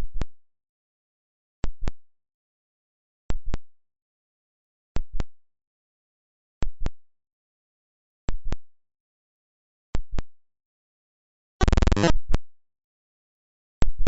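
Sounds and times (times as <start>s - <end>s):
rapid buzzing pulses: 11.6s - 12.1s
sharp clicks: 11.6s - 12.1s.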